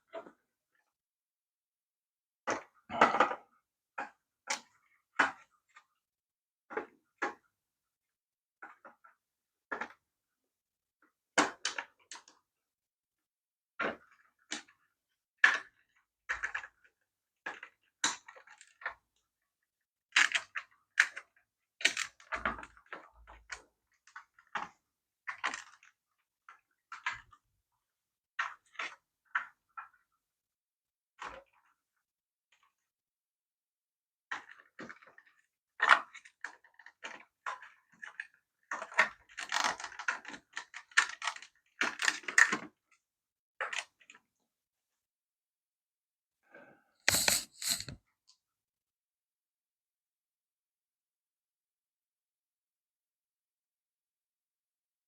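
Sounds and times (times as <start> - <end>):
plastic toy parts clicking and rattling: 47.1 - 48.0.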